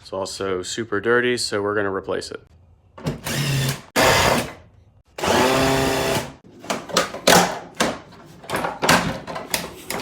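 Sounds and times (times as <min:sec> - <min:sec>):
power drill whining: 0:03.1 - 0:04.6, 0:05.2 - 0:06.4.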